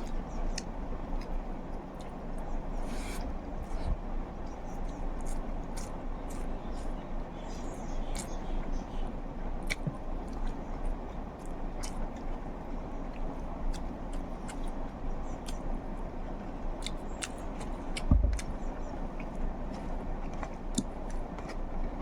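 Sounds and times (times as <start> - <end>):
person chewing: 0.0 - 8.4, 9.6 - 12.4, 13.1 - 16.0, 16.7 - 22.0
dull thump: 18.1 - 18.4.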